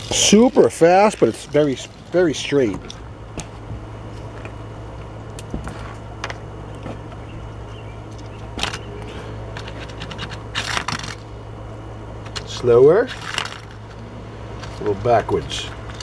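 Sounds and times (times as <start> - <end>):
toy car rolling and scraping: 0.0 - 4.6, 8.1 - 11.3, 12.2 - 16.0
low hum: 0.0 - 16.0.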